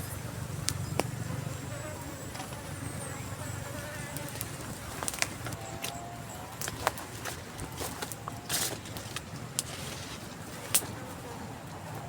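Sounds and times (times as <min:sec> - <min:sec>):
fly buzzing: 0:00.0 - 0:07.1.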